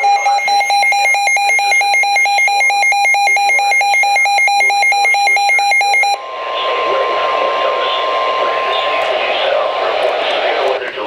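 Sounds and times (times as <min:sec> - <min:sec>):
emergency alert alarm beeping: 0:00.0 - 0:10.7
high warbling tone: 0:06.1 - 0:10.3.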